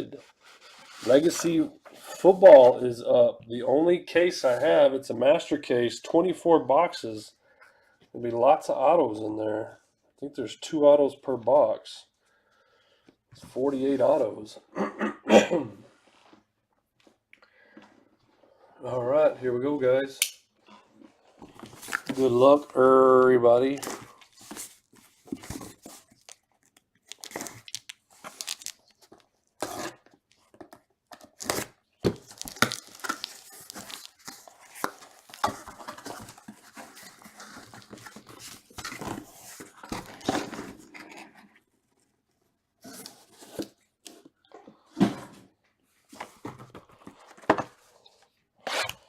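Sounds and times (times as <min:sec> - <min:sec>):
plastic wrap and cardboard tearing: 0:25.8 - 0:30.0, 0:31.2 - 0:40.6.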